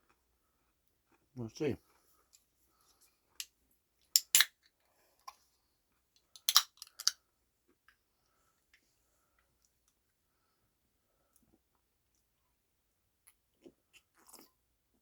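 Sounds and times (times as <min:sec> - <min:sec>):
drink container clicking open: 0:04.2 - 0:04.5, 0:06.4 - 0:07.2.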